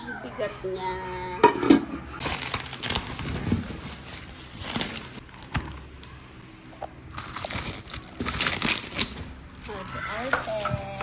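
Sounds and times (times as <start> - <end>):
cookware knocks and clunks: 1.4 - 2.0
packaging rustling: 2.2 - 6.1, 7.1 - 11.0.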